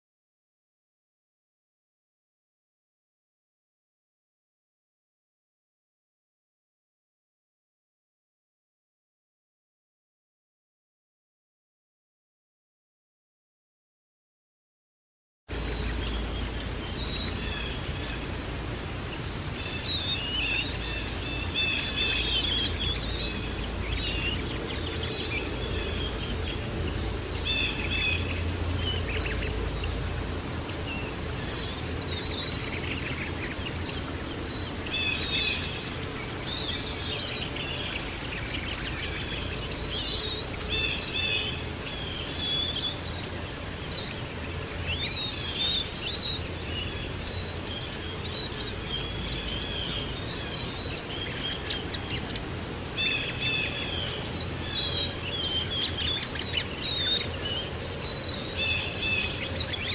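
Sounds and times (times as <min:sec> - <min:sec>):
songbirds chirping and trilling: 0:15.5 - 0:59.9.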